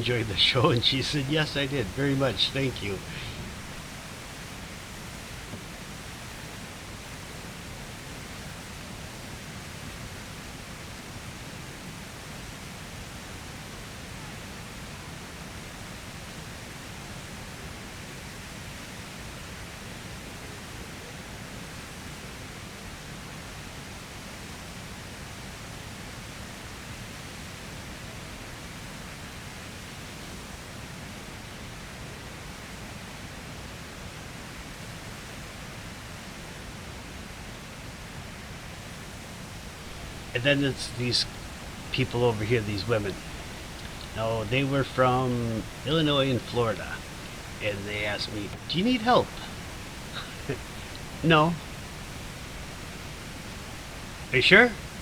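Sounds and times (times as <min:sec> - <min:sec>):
waterfall rushing: 0:00.0 - 0:07.5, 0:39.8 - 0:55.0.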